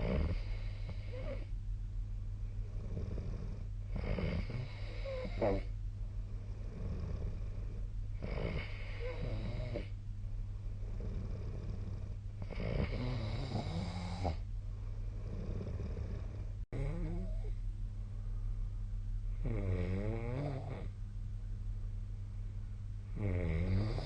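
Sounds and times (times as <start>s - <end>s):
person snoring: 0.0s - 1.5s, 2.7s - 5.7s, 6.6s - 9.9s, 10.8s - 14.4s, 15.2s - 17.5s, 19.4s - 20.9s, 23.2s - 24.0s
steady low hum: 0.0s - 24.0s.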